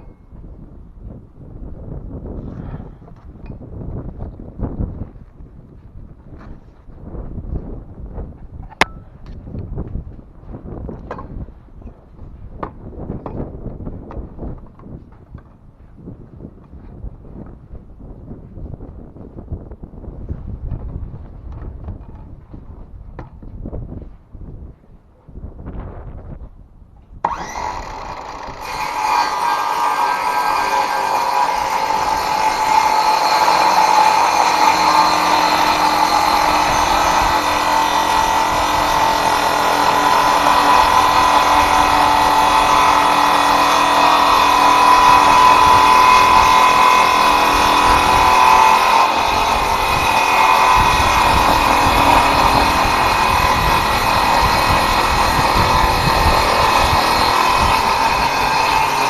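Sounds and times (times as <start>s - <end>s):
circular saw cutting wood: 27.2s - 59.0s.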